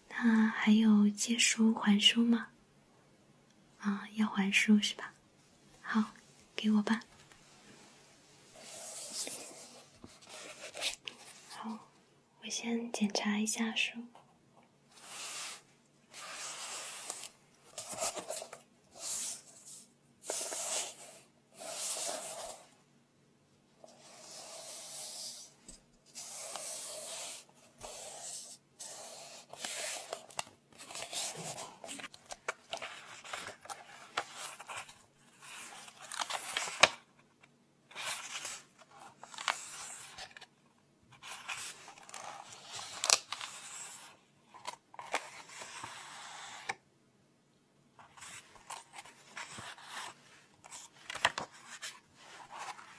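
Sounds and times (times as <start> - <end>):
book pages turning: 8.5 - 11.7, 14.9 - 22.7, 23.8 - 37.1, 37.9 - 40.5, 41.1 - 46.8, 48.0 - 52.9.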